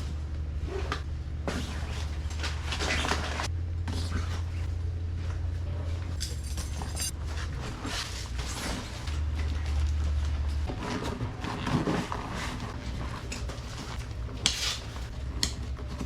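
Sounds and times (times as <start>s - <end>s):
steady low rumble: 0.0s - 16.0s
gear rustling: 5.4s - 16.0s
buckles clinking and clicking: 6.1s - 7.2s.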